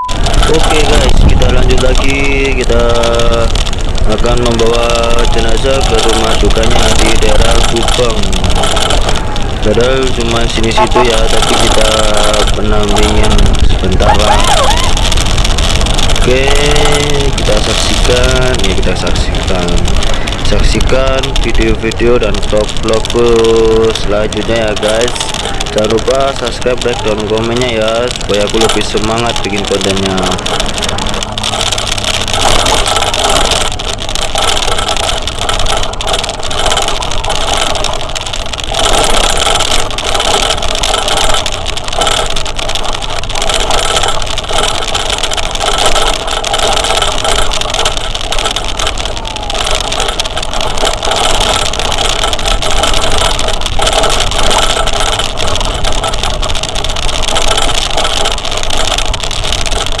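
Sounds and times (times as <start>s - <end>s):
road and wind noise: 0.0s - 60.0s
vehicle engine running: 26.9s - 60.0s.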